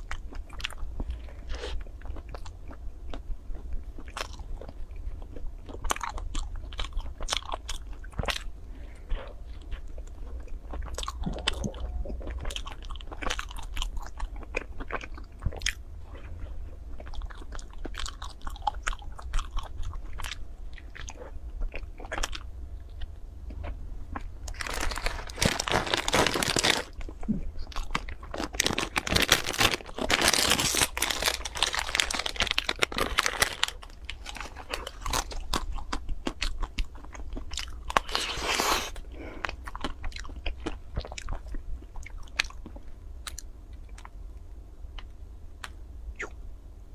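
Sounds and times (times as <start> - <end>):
chocolate coating crunching: 23.6 - 43.4.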